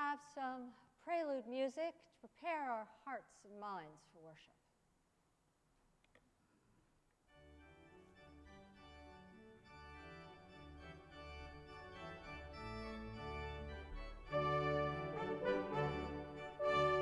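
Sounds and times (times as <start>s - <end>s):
organ chords over low bass: 7.3s - 17.0s.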